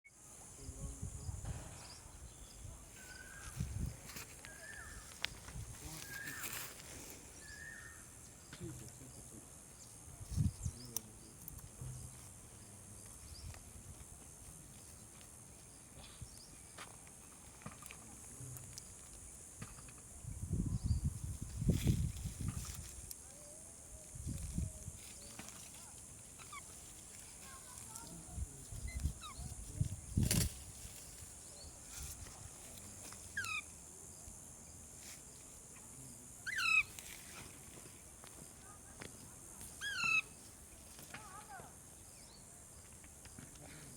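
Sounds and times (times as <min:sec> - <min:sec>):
parrot calling: 0:36.5 - 0:36.9, 0:39.8 - 0:40.4.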